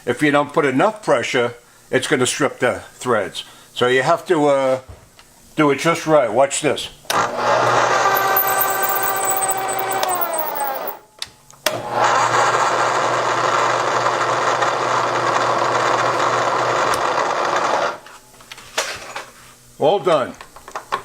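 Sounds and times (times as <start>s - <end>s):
spindle motor tapping threads: 8.1s - 11.0s.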